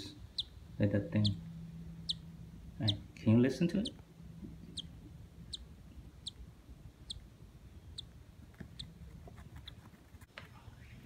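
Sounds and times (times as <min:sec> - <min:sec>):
chick peeping inside egg: 0:00.0 - 0:10.3.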